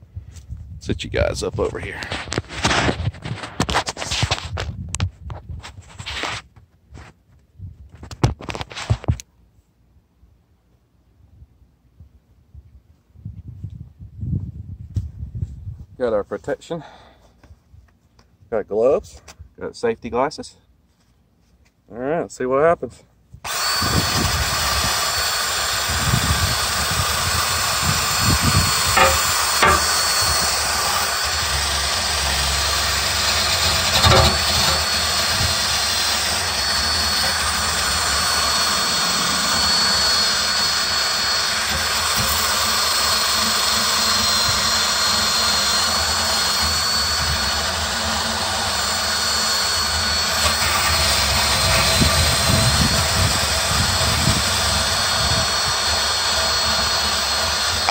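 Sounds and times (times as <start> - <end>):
electric drill motor whine: 23.4 - 57.9
wire brush scraping metal: 28.2 - 38.4
brush knocking: 28.9 - 31.0, 33.7 - 35.0.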